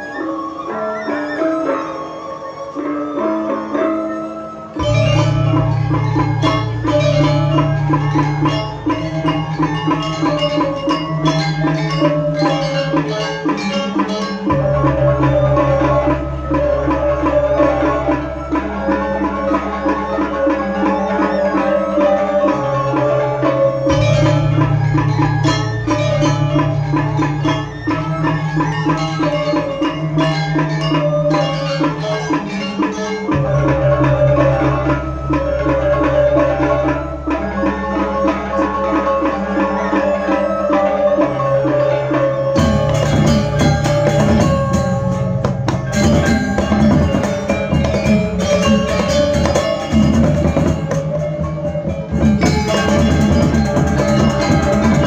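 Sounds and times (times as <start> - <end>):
drum strokes: 4.7 - 55.0
deep sustained low tones: 4.8 - 11.6
metallic gong-chime notes: 4.8 - 55.0.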